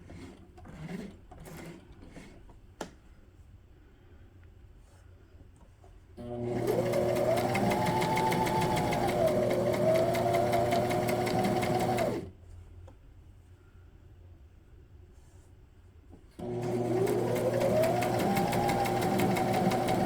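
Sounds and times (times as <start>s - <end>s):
sewing machine stitching: 0.0s - 2.4s, 6.2s - 12.3s, 16.4s - 20.0s.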